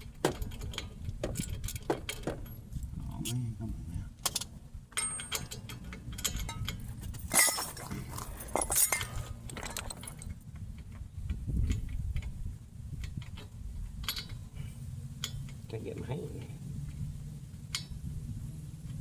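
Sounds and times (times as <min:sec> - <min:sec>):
low steady rumble: 0:00.0 - 0:19.0
metal tools clinking: 0:04.3 - 0:10.4.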